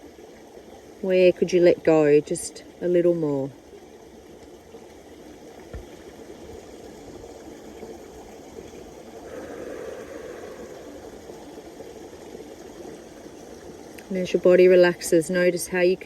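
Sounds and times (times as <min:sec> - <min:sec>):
rushing outdoor noise: 0:09.2 - 0:11.6.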